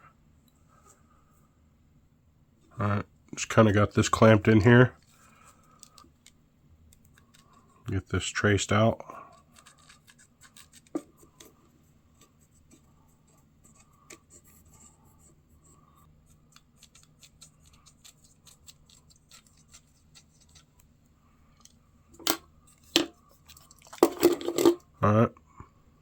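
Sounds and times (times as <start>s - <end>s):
marking tool scratching wood: 9.4s - 11.5s, 16.3s - 20.7s.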